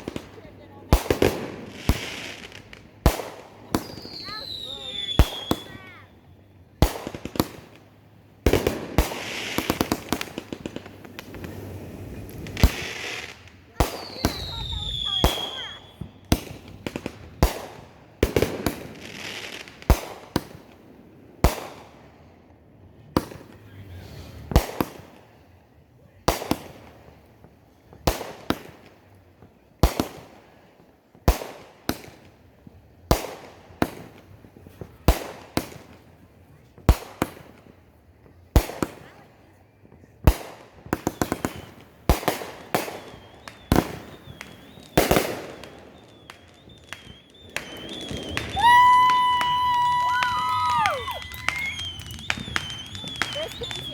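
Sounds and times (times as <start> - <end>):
fireworks bangs: 0.0 - 6.2, 6.8 - 20.8, 23.1 - 25.2, 40.2 - 53.9
fireworks crackling: 0.0 - 25.5, 26.1 - 53.9.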